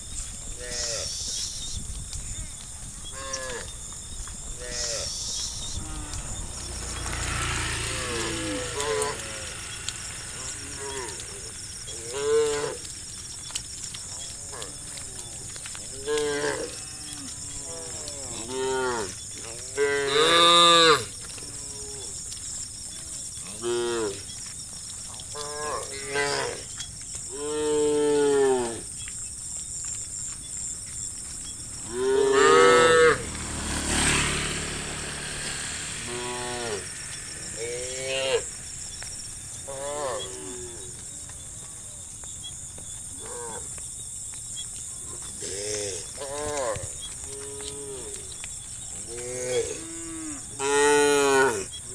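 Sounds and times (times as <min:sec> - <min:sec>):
steady high-pitched hiss: 0:00.0 - 0:16.1, 0:28.6 - 0:42.8
cattle mooing: 0:04.6 - 0:13.2, 0:31.8 - 0:33.6, 0:35.2 - 0:39.0, 0:49.1 - 0:51.7.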